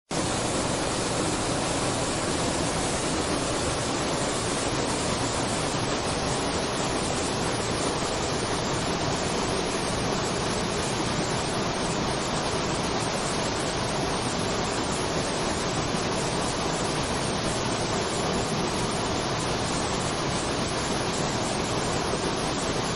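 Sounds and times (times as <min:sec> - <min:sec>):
waterfall rushing: 0:00.1 - 0:22.9.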